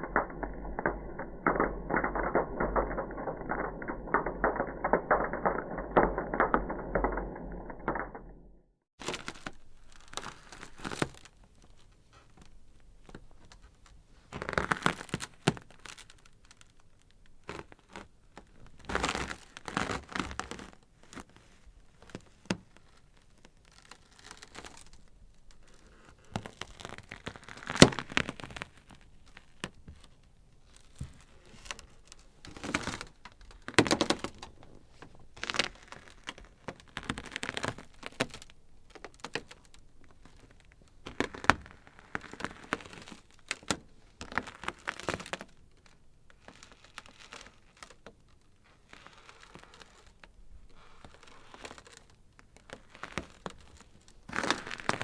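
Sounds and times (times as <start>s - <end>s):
ice cracking: 52.7s - 55.0s.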